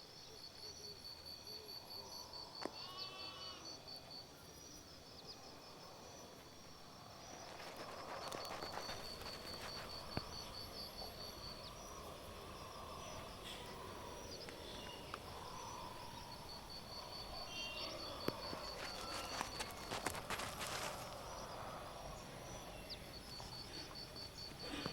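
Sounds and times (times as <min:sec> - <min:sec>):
background hiss: 0:00.0 - 0:24.9
insect chirping trill: 0:00.0 - 0:24.9.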